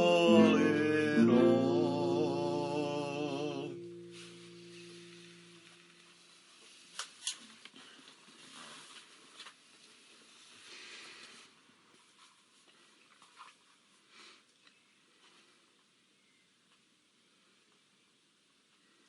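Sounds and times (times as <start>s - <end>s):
hymn singing: 0.0s - 5.6s.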